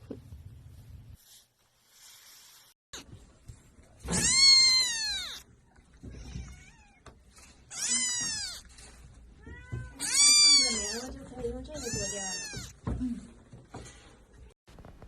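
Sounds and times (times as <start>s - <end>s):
cat meowing: 4.1s - 8.8s, 9.4s - 11.1s, 11.7s - 12.8s.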